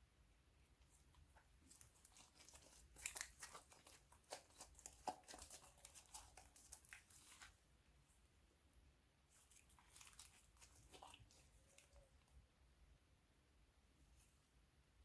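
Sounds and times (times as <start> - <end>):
crunchy slime crackling and popping: 1.6 - 7.2.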